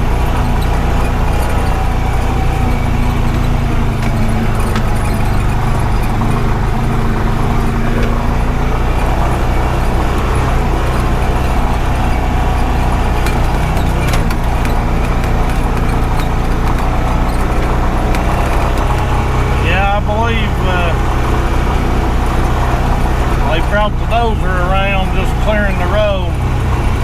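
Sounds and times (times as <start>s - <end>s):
knocks and rattles: 0.0s - 20.0s
vehicle engine running: 0.0s - 27.0s.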